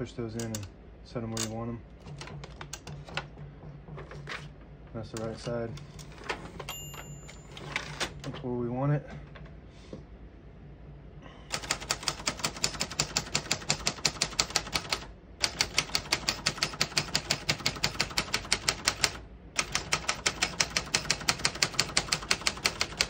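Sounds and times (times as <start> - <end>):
manual typewriter typing: 0.4 - 0.7, 1.4 - 3.3, 5.1 - 8.4, 11.5 - 23.0.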